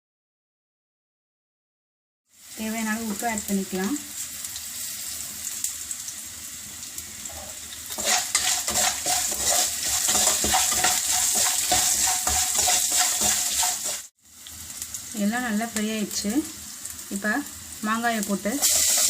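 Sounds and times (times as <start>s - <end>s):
food sizzling in oil: 2.3s - 19.0s
spatula scraping a pan: 7.2s - 14.1s, 18.6s - 19.0s.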